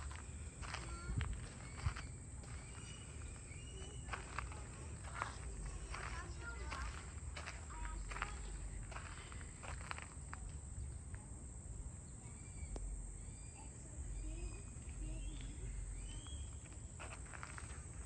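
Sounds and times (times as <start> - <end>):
footsteps on a path: 0.0 - 10.6, 15.4 - 18.0
bird chirps: 0.1 - 4.7, 12.1 - 16.7.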